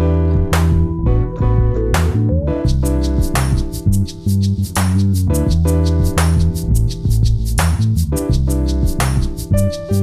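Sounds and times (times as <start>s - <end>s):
instrumental music with drum beat: 0.4s - 10.0s.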